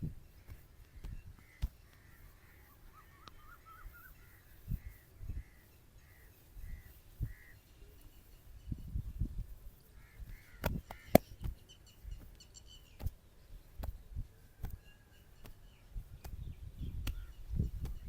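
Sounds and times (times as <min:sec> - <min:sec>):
birds calling: 0:00.2 - 0:08.5, 0:09.7 - 0:18.0
warbling bird chirps: 0:01.5 - 0:07.6.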